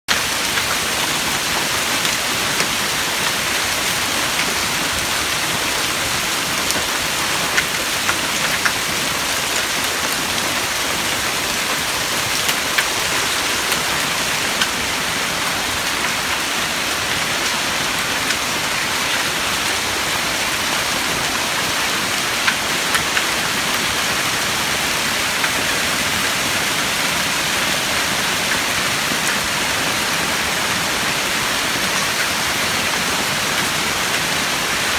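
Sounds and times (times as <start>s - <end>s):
hail and heavy rain pelting: 0.1s - 34.9s
hailstones clicking: 6.7s - 8.9s.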